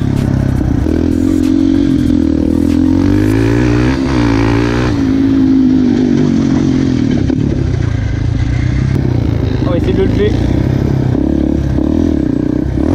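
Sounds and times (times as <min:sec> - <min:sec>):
quad engine revving: 0:00.0 - 0:12.9.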